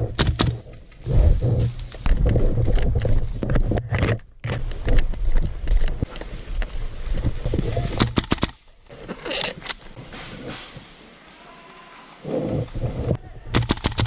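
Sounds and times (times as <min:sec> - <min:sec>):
sharp clicks and knocks: 0:00.0 - 0:00.8, 0:13.6 - 0:14.0
wind rumble on microphone: 0:01.0 - 0:08.0, 0:12.4 - 0:13.6.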